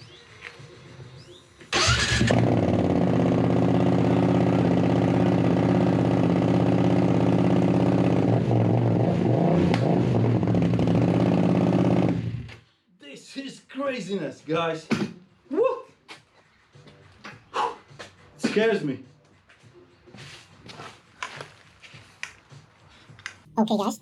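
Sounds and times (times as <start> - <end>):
motorcycle engine idling: 2.5 - 7.6.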